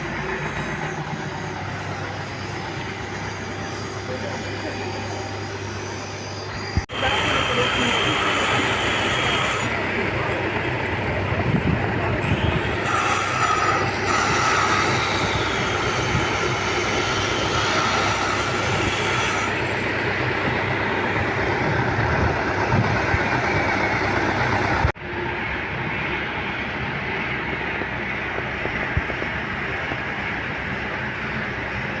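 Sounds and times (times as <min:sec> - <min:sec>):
high metallic squeal: 0:00.0 - 0:10.0, 0:12.0 - 0:21.1
heavy machinery running: 0:00.0 - 0:32.0.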